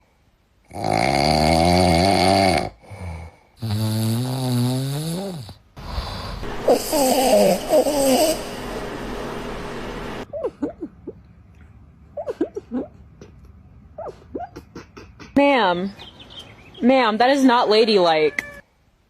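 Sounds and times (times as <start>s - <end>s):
dog snoring loudly: 0.7s - 8.6s.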